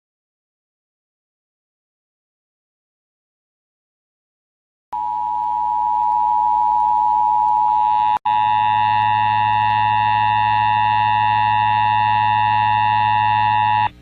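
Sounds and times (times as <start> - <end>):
low hum: 5.0 - 14.0.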